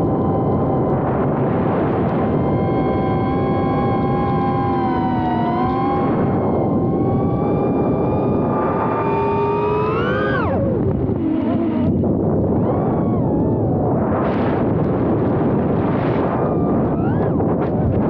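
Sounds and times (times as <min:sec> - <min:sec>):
quadcopter motors whining: 0:00.0 - 0:18.0
wind noise on microphone: 0:00.0 - 0:18.0.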